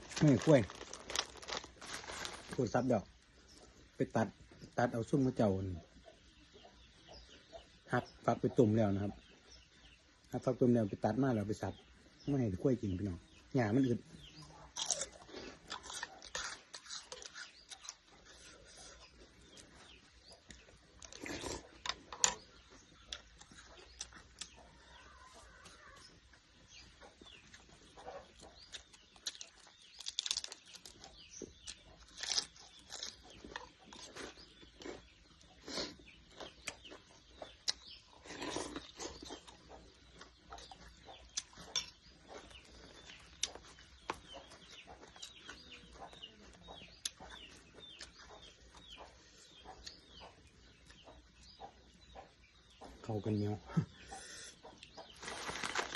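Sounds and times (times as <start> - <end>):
chickens clucking: 0.0 - 30.0, 30.8 - 55.9
small birds chirping: 0.0 - 55.9.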